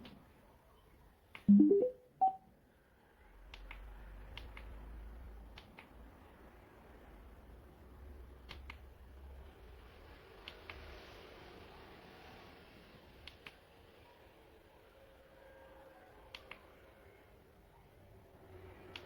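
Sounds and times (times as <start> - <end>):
electronic rising beeps chime: 1.5 - 2.4
single higher beep: 1.5 - 2.4.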